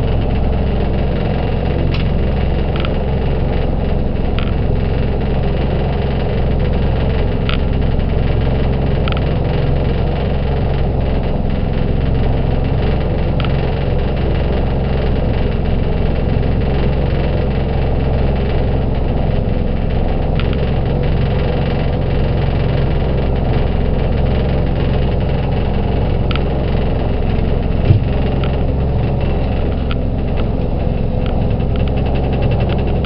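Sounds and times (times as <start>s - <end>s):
motorboat engine running: 0.0s - 33.0s.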